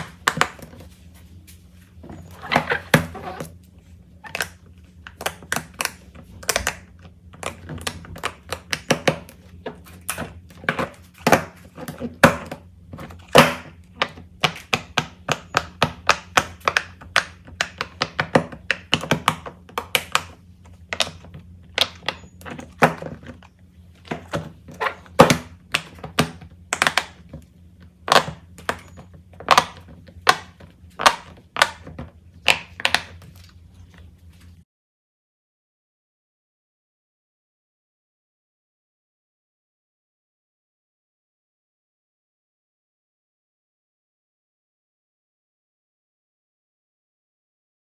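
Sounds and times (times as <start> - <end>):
steady low hum: 0.0 - 34.6.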